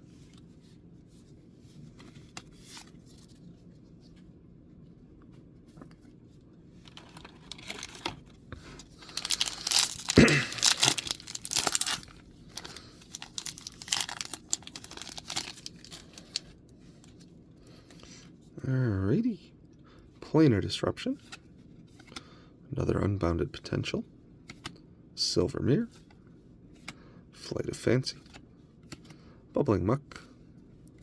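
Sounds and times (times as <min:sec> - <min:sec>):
wrapper tearing and crinkling: 0:06.9 - 0:08.2, 0:08.9 - 0:16.4.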